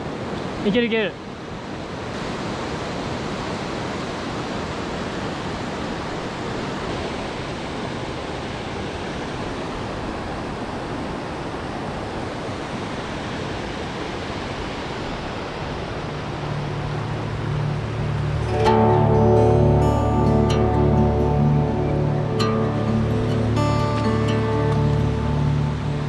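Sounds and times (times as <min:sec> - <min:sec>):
river rapids rushing: 0:15.6 - 0:26.0.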